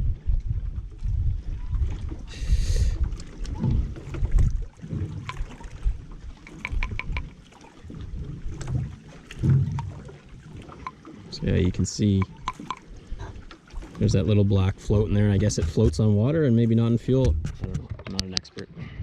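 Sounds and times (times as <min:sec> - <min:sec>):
wind rumble on microphone: 0:00.0 - 0:10.5, 0:11.3 - 0:19.0
handling clicks and knocks: 0:05.1 - 0:05.6, 0:06.4 - 0:07.3, 0:12.1 - 0:12.9.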